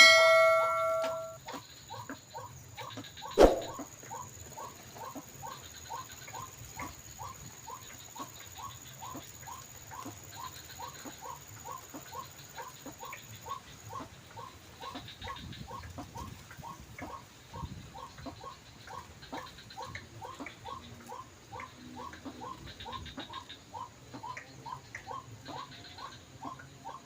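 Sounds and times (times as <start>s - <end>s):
bird call from speaker: 0.0s - 1.4s
wind rumble on microphone: 15.0s - 18.3s.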